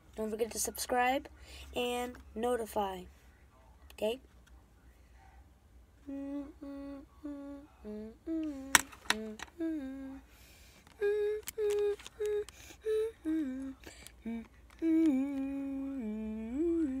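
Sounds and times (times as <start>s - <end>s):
person humming: 6.0s - 17.0s.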